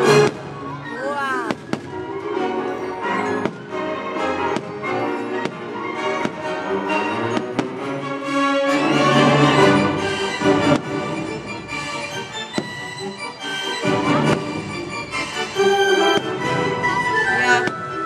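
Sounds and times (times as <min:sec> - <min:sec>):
firework bangs: 0:00.0 - 0:02.4, 0:04.4 - 0:06.7, 0:07.3 - 0:08.0, 0:10.5 - 0:13.1, 0:14.1 - 0:18.0
orchestral music with strings: 0:00.0 - 0:18.0.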